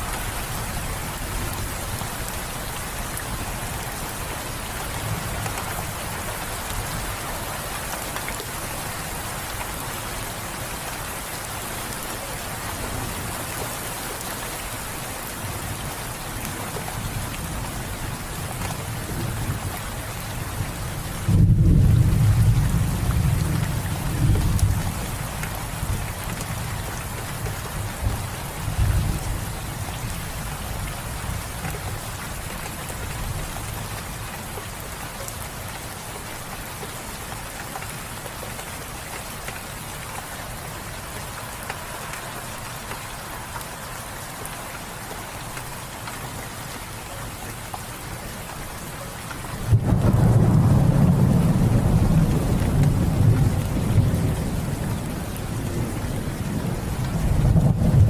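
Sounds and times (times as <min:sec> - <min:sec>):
steady rain falling: 0:00.0 - 0:58.0
thunder rumble: 0:49.6 - 0:58.0.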